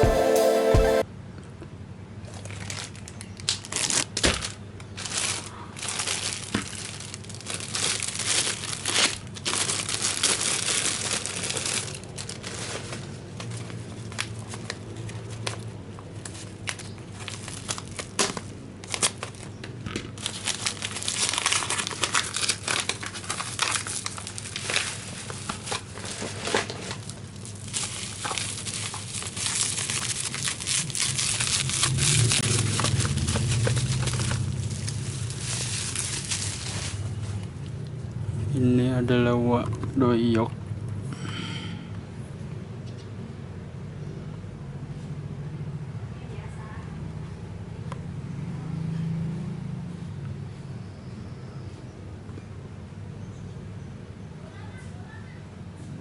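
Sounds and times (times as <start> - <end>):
packaging crinkling and tearing: 2.2 - 37.7.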